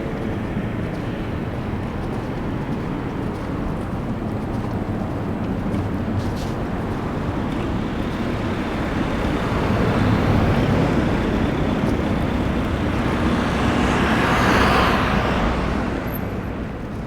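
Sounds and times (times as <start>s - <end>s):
low rumble of city noise: 0.0s - 17.0s
vehicle passing: 7.7s - 16.8s.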